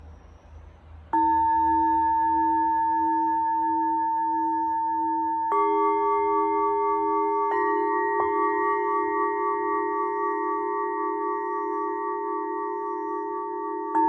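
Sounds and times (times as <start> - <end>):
higher-pitched singing bowl: 0.0 - 14.0
night insects chirping: 0.0 - 14.0
singing bowl ringing: 1.1 - 14.0.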